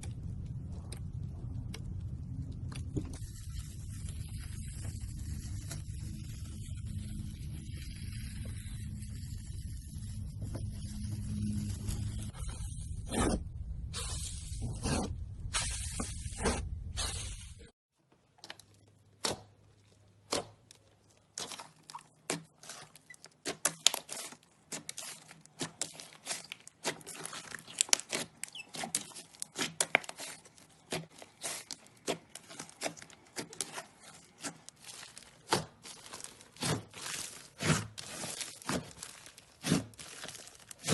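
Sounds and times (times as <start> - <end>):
slime crackling and popping: 21.5 - 40.9.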